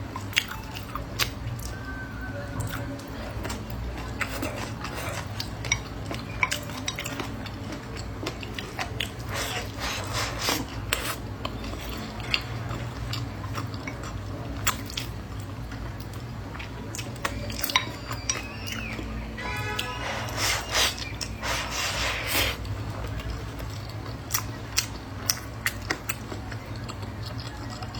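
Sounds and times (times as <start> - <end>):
biting and chewing food: 2.6 - 27.9
cutlery clinking against a dish: 4.2 - 7.3, 17.5 - 21.6.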